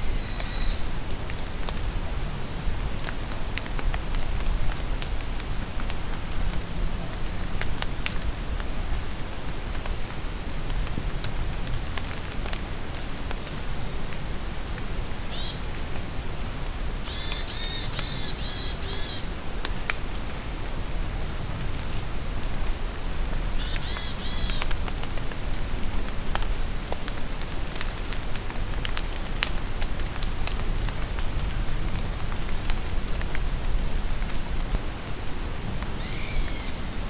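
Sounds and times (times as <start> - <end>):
rain on leaves: 0.0 - 37.0
bird harsh repeated calls: 17.1 - 19.3, 23.6 - 24.6, 36.0 - 37.0.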